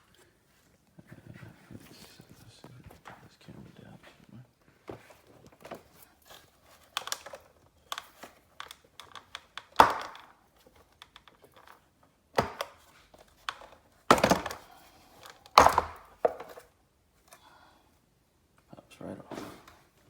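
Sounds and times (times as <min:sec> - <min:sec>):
plastic cover popping free thunks: 0:04.8 - 0:11.8, 0:12.4 - 0:16.7
plastic handling clicks and knocks: 0:04.8 - 0:16.7.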